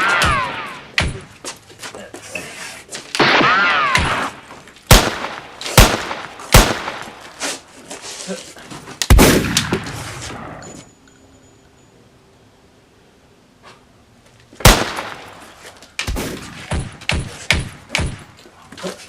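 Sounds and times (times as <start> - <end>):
gunshots: 0.0 - 1.3, 3.2 - 7.4, 9.1 - 10.6, 14.6 - 18.3.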